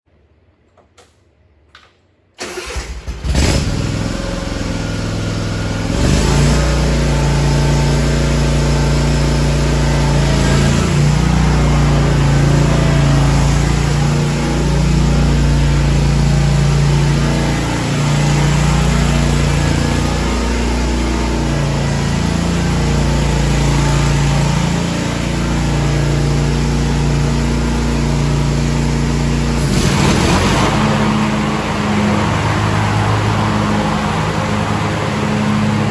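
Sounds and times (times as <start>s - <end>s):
mower engine starting and running: 2.4s - 35.9s.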